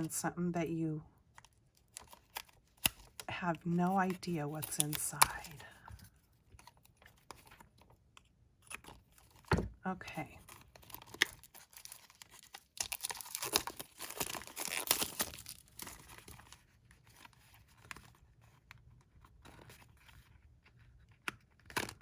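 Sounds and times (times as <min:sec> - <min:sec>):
paper packaging tearing and crinkling: 0:03.8 - 0:05.6, 0:10.4 - 0:18.0.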